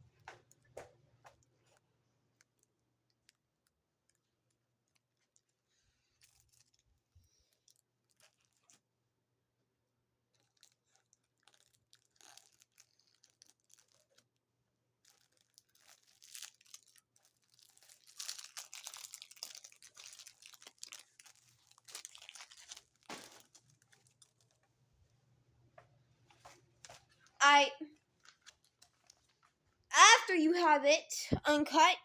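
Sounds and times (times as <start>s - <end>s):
plastic wrapping crinkling: 2.4s - 8.9s, 10.2s - 24.9s, 26.2s - 29.7s.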